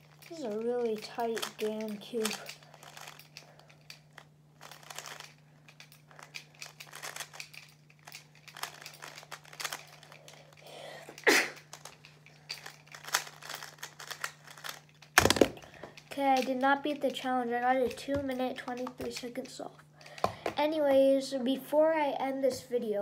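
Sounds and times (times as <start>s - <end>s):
speed cube clicking and scraping: 0.0s - 20.6s
faint low hum: 0.0s - 23.0s
loud cube clack: 13.0s - 15.6s.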